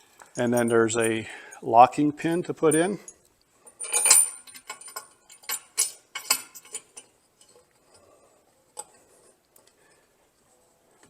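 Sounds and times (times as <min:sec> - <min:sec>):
metal clinking on metal: 0:02.6 - 0:08.0.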